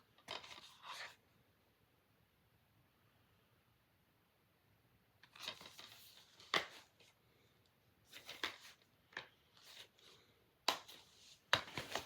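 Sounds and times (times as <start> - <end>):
plastic cases clicking and rustling: 10.7 - 12.0.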